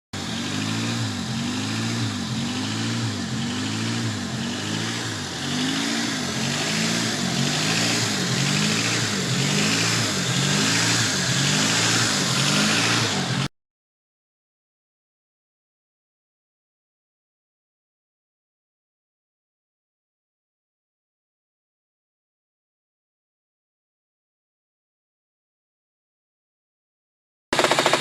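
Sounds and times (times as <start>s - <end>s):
car engine surging: 0.2s - 13.5s.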